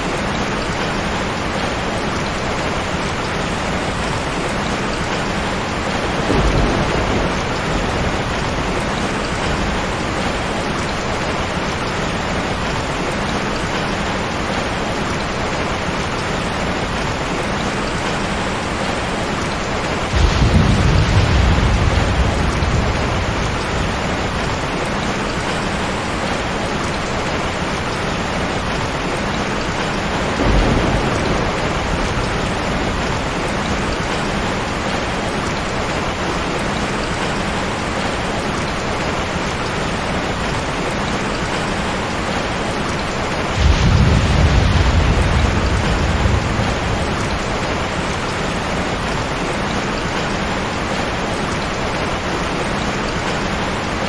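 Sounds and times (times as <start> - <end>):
heavy rain: 0.0 - 54.0
thunder rumbling: 5.0 - 13.8, 18.8 - 26.4, 28.6 - 35.9, 39.9 - 50.2.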